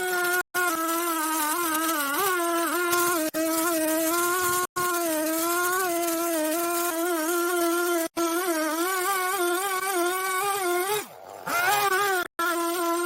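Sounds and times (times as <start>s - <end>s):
power tool motor buzzing whine: 0.0s - 13.0s.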